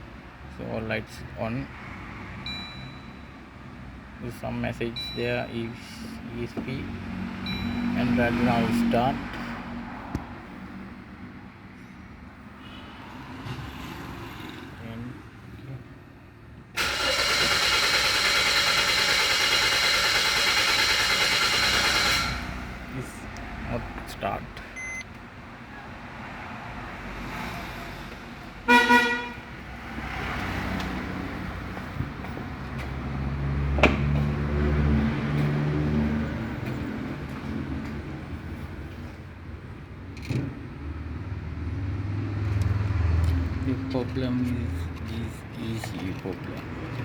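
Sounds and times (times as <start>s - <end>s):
engine cranking by starter motor: 16.8s - 22.7s.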